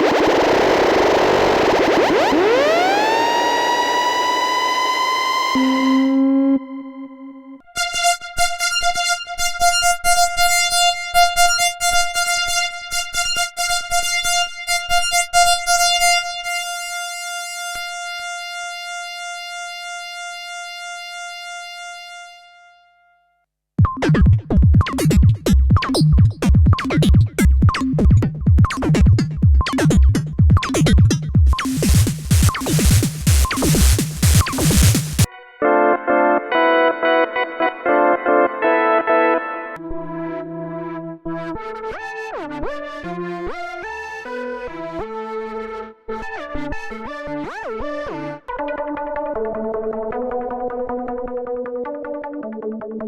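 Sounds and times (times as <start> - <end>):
held high synth tone: 1.8 - 7.6
deep pulsing bass: 23.8 - 35.3
fast clicking rhythm: 23.8 - 35.3
rhythmic synth sequence: 23.8 - 35.3.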